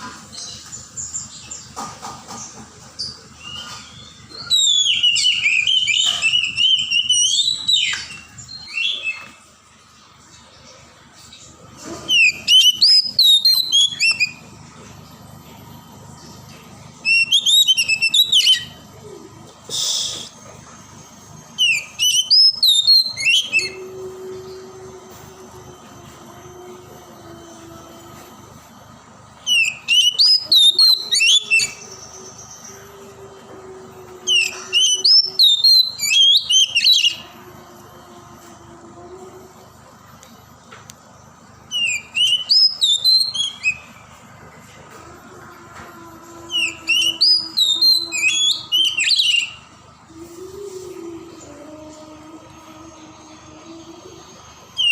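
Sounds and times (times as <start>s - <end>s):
low steady hum: 0.0s - 54.9s
bird singing whistled phrases: 3.4s - 9.3s, 12.1s - 14.5s, 17.0s - 18.8s, 21.6s - 24.7s, 29.4s - 32.8s, 34.2s - 37.3s, 41.7s - 44.0s, 46.5s - 50.2s.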